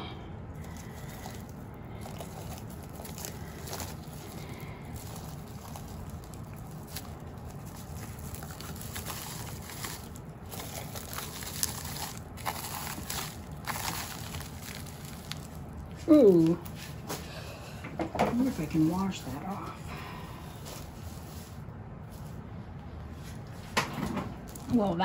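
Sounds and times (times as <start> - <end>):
steady background noise: 0.0 - 25.0
bubble wrap crinkling: 0.5 - 17.2.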